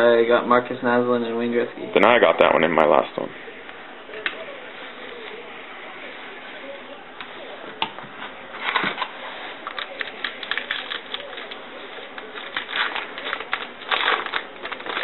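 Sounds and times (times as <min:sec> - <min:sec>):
trading cards clicking and rustling: 0:08.6 - 0:15.0.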